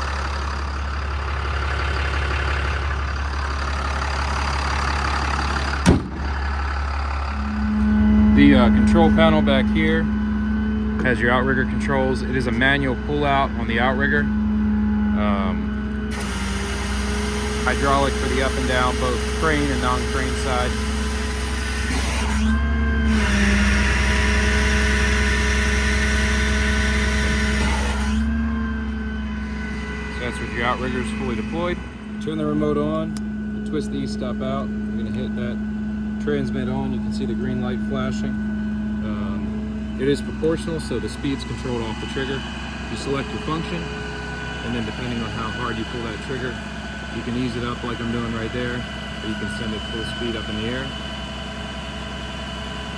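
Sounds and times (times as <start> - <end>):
diesel engine idling: 0.0 - 52.9
sharp thump: 5.8 - 6.4.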